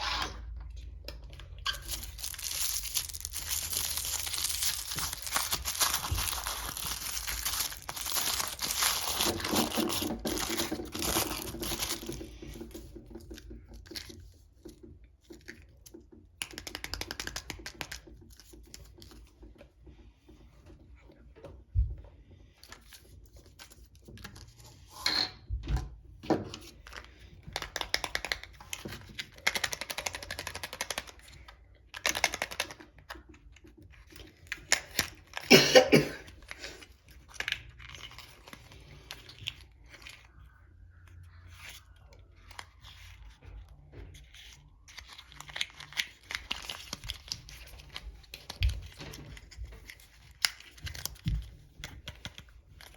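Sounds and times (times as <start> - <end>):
plastic wrapping tearing and crinkling: 1.6 - 12.8, 36.2 - 40.3, 44.2 - 52.9.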